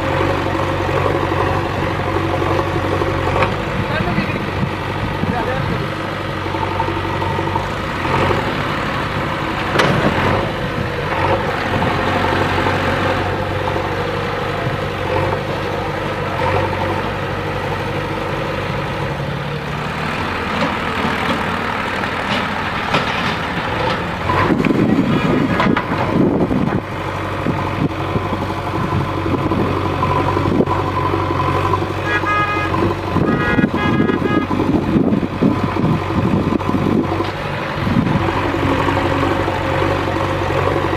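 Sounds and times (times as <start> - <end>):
diesel engine working: 0.0 - 40.9
short beeping toots: 32.0 - 34.5.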